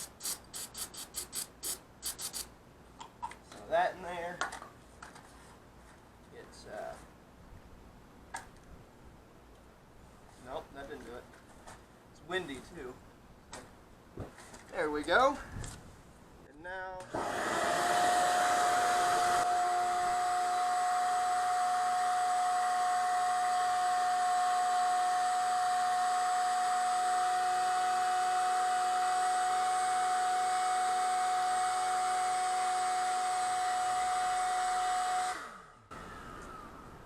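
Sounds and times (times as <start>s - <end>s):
electric air blower whining: 0.0s - 2.5s, 17.0s - 36.9s.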